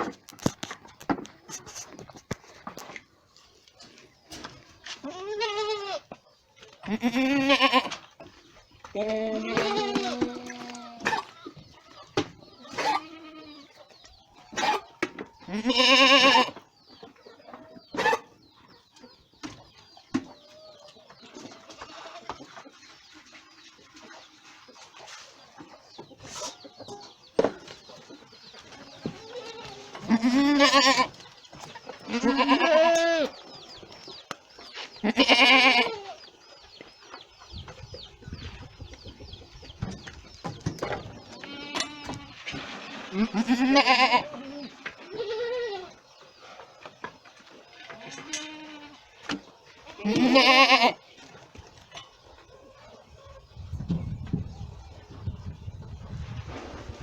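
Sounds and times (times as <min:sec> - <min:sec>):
goats bleating: 0:05.0 - 0:06.1, 0:06.9 - 0:08.0, 0:09.0 - 0:11.0, 0:12.7 - 0:13.6, 0:15.5 - 0:16.5, 0:29.3 - 0:31.2, 0:32.1 - 0:33.3, 0:35.0 - 0:36.2, 0:43.1 - 0:45.9, 0:50.0 - 0:51.0.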